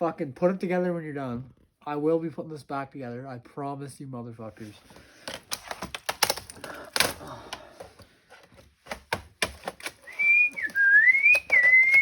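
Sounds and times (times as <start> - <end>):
plastic clicks and snaps: 5.2 - 12.0
person whistling: 10.0 - 12.0.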